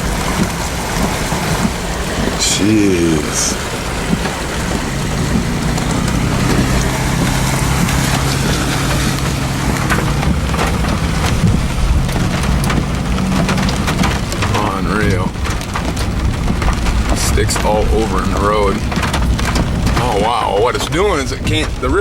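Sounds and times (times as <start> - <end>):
car engine low hum: 0.0 - 22.0
heavy rain on car roof: 0.0 - 22.0.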